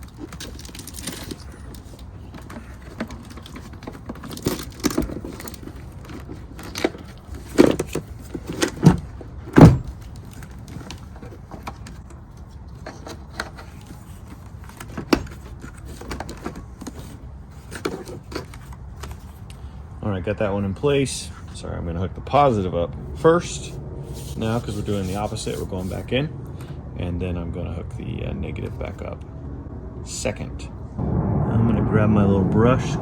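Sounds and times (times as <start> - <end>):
battery cables moving: 0.0 - 19.6.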